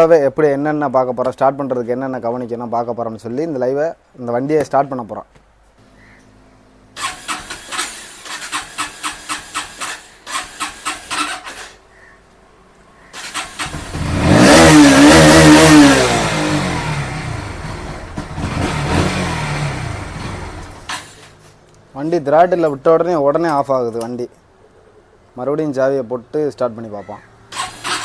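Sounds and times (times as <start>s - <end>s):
motorcycle engine revving: 6.9s - 11.8s, 13.1s - 21.4s, 27.3s - 28.0s
motorcycle engine cranking: 7.0s - 11.8s, 13.0s - 21.6s, 27.5s - 28.0s.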